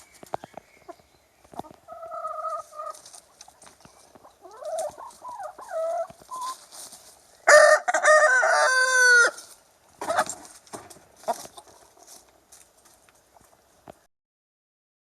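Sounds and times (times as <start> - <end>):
chicken calls: 0.0 - 12.1
rooster crowing: 7.5 - 9.4.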